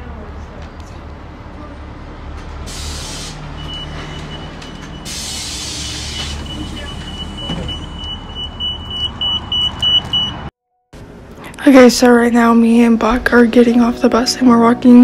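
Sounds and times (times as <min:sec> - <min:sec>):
bus engine rumble: 0:00.0 - 0:15.0
air brake hiss: 0:02.7 - 0:03.5, 0:05.0 - 0:06.4.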